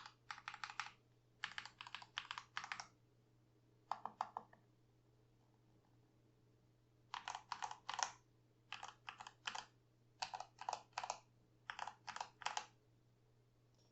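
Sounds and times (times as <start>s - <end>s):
typing on mechanical keyboard: 0.0s - 2.9s, 3.9s - 4.5s, 7.1s - 12.7s.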